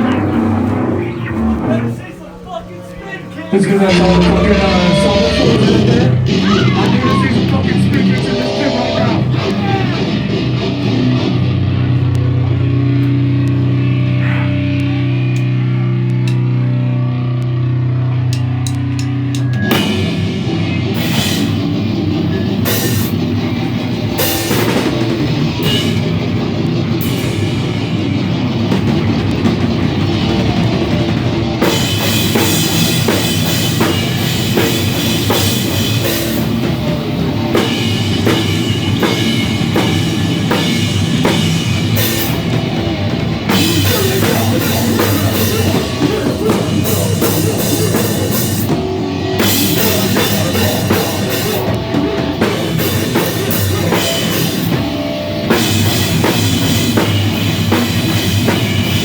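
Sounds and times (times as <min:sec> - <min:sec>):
bass guitar: 0:00.0 - 0:59.0
electric guitar: 0:00.0 - 0:59.0
drum kit with cymbals: 0:18.3 - 0:59.0.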